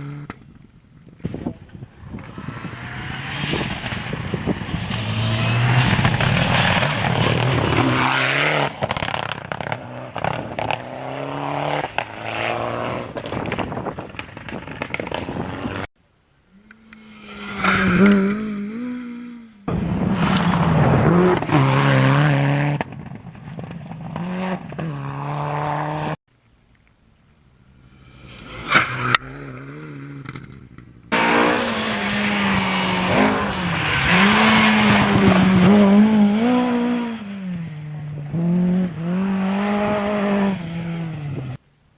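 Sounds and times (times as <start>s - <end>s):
gravel scraping under tyres: 0.0s - 15.9s, 17.0s - 26.1s, 27.6s - 41.6s
rally car engine revving: 2.0s - 13.3s, 16.9s - 23.2s, 28.0s - 41.6s.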